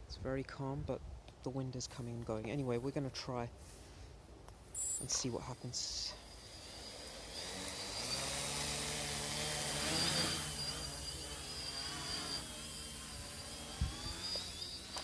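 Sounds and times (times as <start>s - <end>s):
drone motors and propellers whining: 4.8s - 15.0s.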